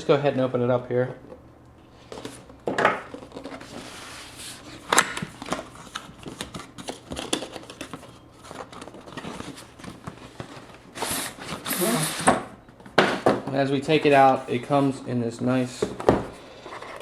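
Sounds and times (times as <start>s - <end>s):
packaging rustling and crinkling: 2.0s - 12.3s, 16.4s - 17.0s.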